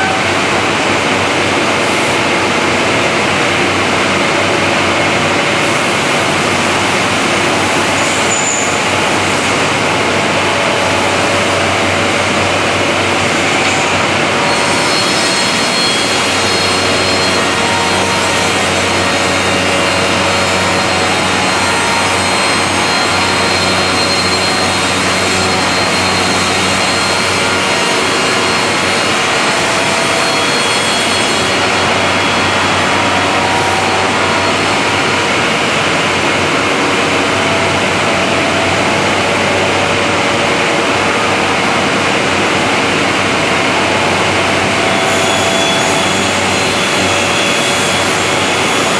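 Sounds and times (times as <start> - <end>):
machine sawing wood: 5.8 - 40.1.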